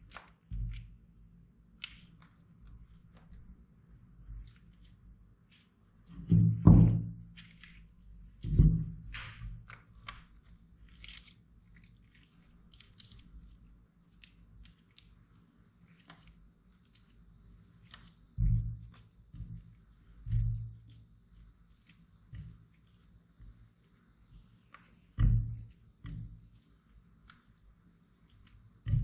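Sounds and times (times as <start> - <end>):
slime squishing: 0.0 - 6.4, 7.2 - 29.0
low thuds: 6.2 - 7.3
small crackling pops: 21.8 - 29.0.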